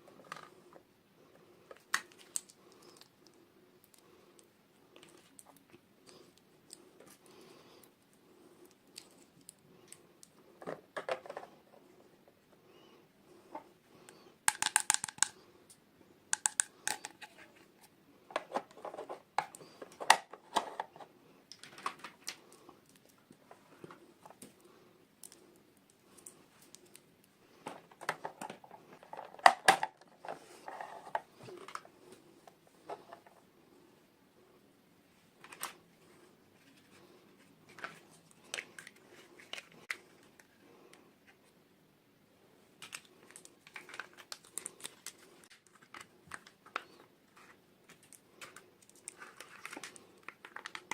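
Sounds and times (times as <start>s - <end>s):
packaging rustling: 42.8s - 50.9s.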